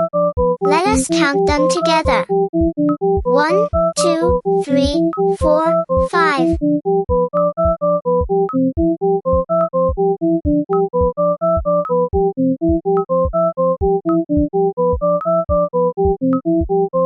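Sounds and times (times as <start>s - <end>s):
bright synthesizer keyboard tune: 0.0s - 8.7s.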